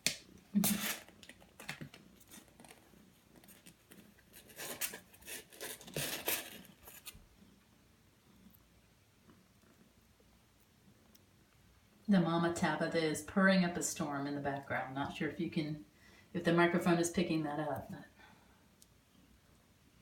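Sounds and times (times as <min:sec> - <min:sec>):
kittens scratching on bedding: 0:00.6 - 0:07.2.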